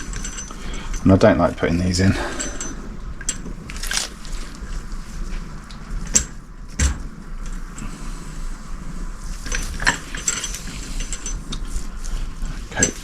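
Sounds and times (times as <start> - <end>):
metal parts clicking and knocking: 0.0 - 1.2, 12.8 - 13.0
small clicks and rattles: 0.0 - 13.0.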